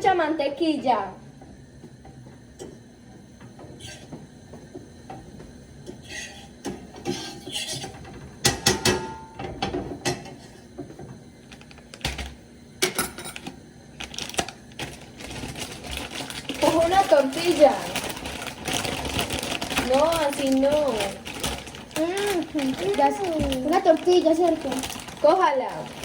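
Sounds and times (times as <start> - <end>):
dish scraping: 3.8 - 4.2, 5.9 - 9.2
utensils and dishes clattering: 5.9 - 10.4, 12.1 - 26.0.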